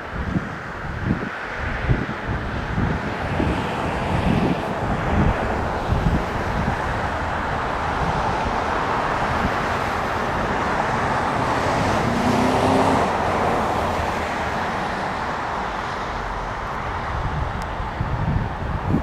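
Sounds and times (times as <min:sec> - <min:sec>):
road traffic noise: 0:00.0 - 0:19.0
vehicle passing: 0:01.2 - 0:18.8.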